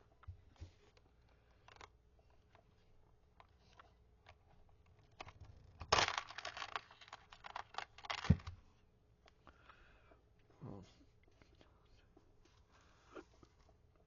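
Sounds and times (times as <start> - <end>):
necklace beads clicking and rattling: 5.9 - 8.3.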